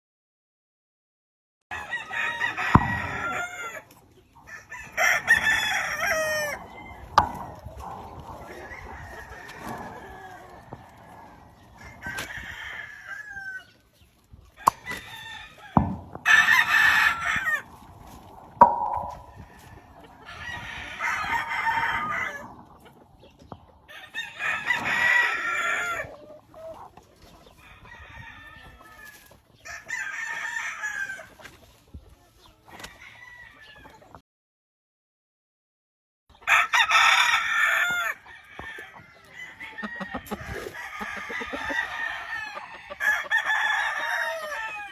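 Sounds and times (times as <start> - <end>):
roosters crowing: 1.7 - 13.8, 14.6 - 31.4, 36.4 - 44.9
chickens clucking: 1.7 - 34.2, 37.9 - 44.9.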